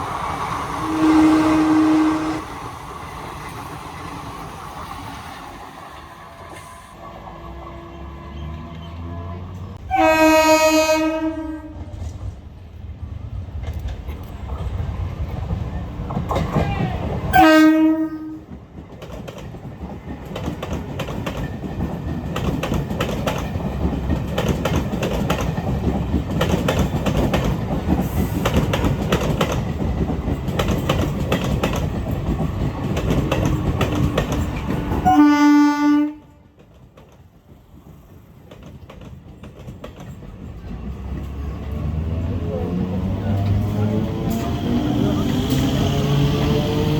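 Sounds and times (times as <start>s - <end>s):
train passing at speed: 0.0s - 46.9s
train horn blast: 0.7s - 2.6s, 6.2s - 12.0s, 17.3s - 18.5s, 35.0s - 36.6s
wheels clattering over rail joints: 18.5s - 35.2s.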